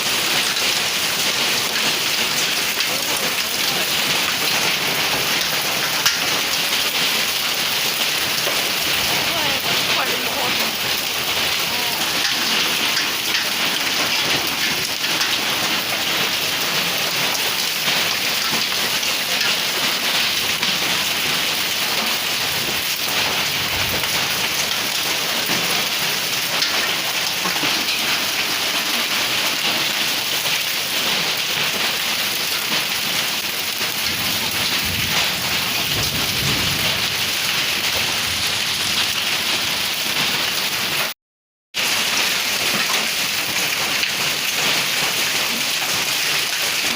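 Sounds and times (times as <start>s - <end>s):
heavy rain and hail: 0.0s - 46.9s
distant thunder rumbles: 21.9s - 26.0s, 34.1s - 39.2s.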